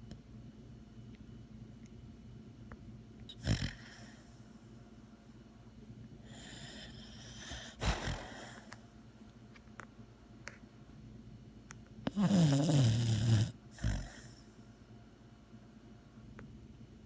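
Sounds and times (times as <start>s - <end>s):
dog snoring: 3.3s - 4.4s, 6.2s - 8.8s, 12.1s - 14.5s
hissing breath: 6.3s - 8.8s
dog snorting: 6.6s - 8.8s, 12.1s - 14.4s.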